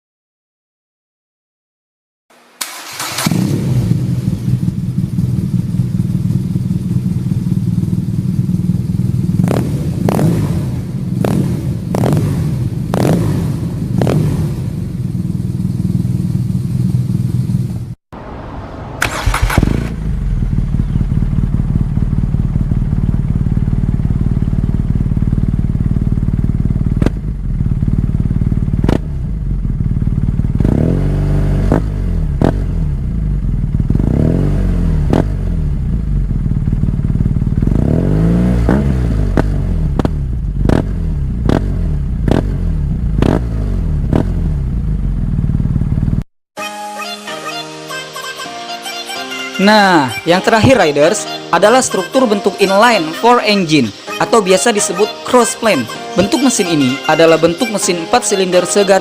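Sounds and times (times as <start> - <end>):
motorcycle engine idling and revving: 2.6 - 46.3.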